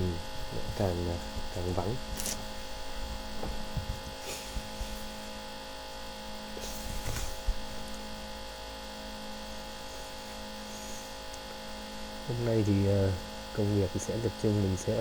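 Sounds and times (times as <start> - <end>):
electrical hum: 0.0 - 15.0
faint rustles: 6.6 - 7.6.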